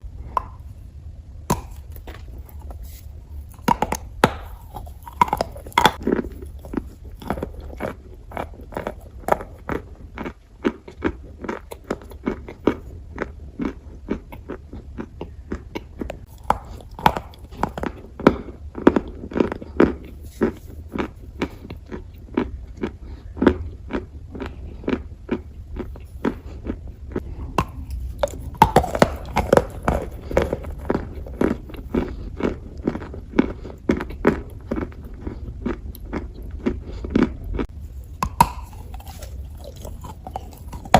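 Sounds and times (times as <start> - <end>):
chewing dry clay: 0.0 - 40.9
steady low hum: 0.0 - 40.9.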